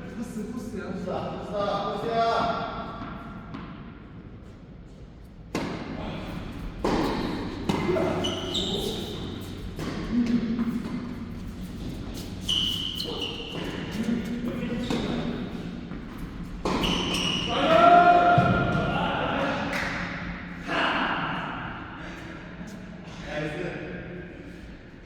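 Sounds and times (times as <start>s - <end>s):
tennis ball hit and bouncing: 5.5s - 5.9s, 6.8s - 8.1s, 14.9s - 17.2s.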